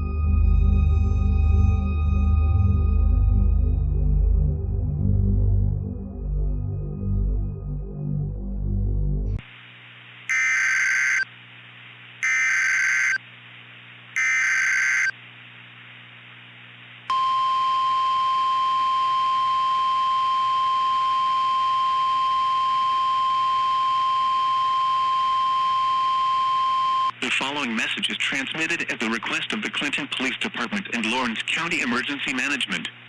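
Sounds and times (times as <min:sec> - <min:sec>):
radio hiss: 0:09.4 - 0:17.1, 0:27.1 - 0:33.0
screeching digital data tones: 0:10.3 - 0:11.3, 0:12.2 - 0:13.2, 0:14.2 - 0:15.1.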